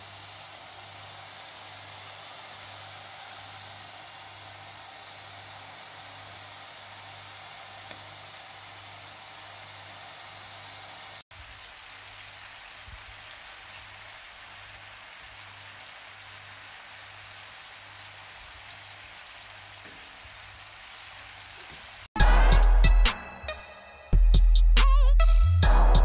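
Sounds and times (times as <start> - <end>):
steady hissing noise: 0.0 - 23.6
loud music with drum beat: 22.2 - 26.0.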